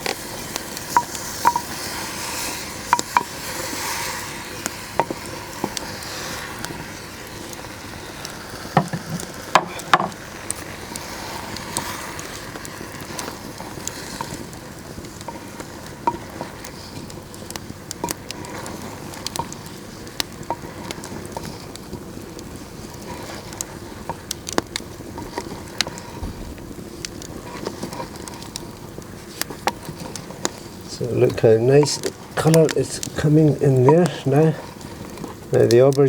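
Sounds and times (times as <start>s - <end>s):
fire crackling: 0.0s - 36.0s
vegetables sizzling in oil: 0.0s - 36.0s
knocks on clay pot: 8.8s - 10.2s.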